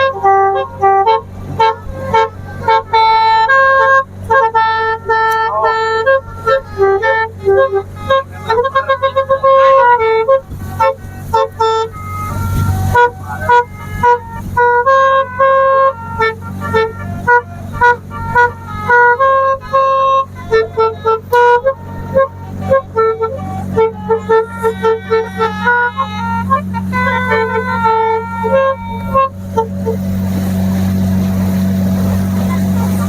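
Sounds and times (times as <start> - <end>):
low steady hum: 0.0 - 33.0
multi-tone air horn tune: 0.0 - 33.0.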